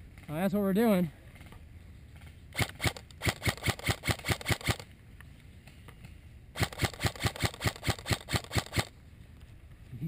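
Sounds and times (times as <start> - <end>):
airsoft gun shots: 2.5 - 4.9, 6.6 - 8.9.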